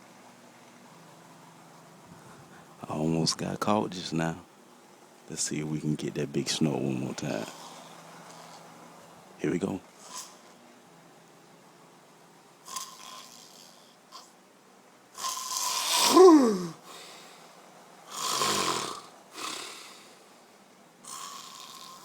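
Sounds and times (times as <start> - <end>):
man snoring: 12.7 - 14.3, 15.2 - 16.8, 18.1 - 20.1, 21.0 - 22.0.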